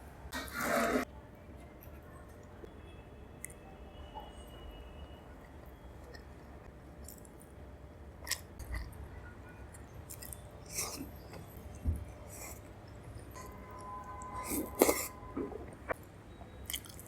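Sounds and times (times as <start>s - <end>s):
person chewing: 8.2s - 9.0s, 9.7s - 13.8s, 14.4s - 15.2s, 16.6s - 17.0s.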